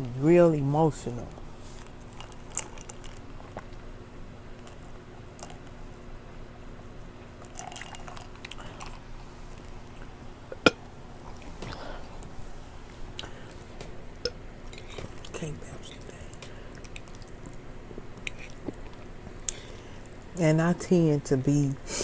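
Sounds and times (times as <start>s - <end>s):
person chewing and smacking: 4.6s - 5.7s, 16.0s - 20.3s.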